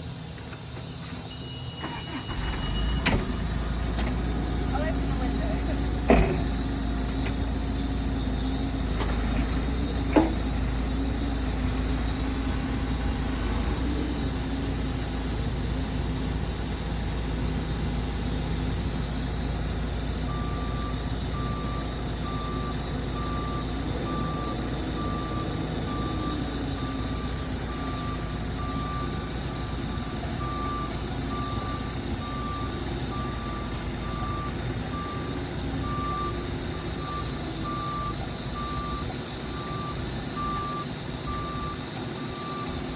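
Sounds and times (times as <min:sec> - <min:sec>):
diesel engine running: 0:00.0 - 0:42.9
reversing alarm beeping: 0:00.8 - 0:14.5, 0:19.2 - 0:42.9.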